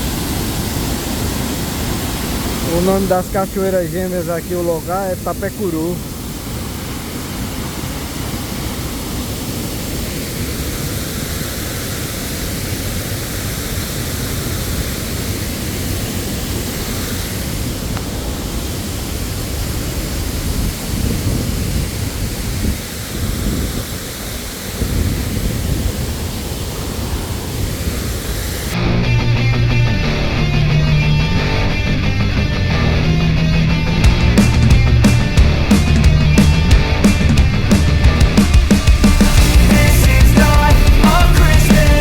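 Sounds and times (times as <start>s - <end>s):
waterfall roaring: 0.0s - 28.8s, 33.8s - 42.0s
low rumbles: 28.8s - 42.0s.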